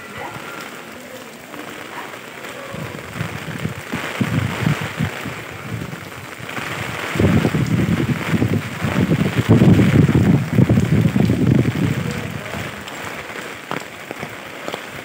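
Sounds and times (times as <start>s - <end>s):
heavy rain falling: 0.0s - 15.0s
wind gusts buffeting microphone: 2.6s - 13.2s.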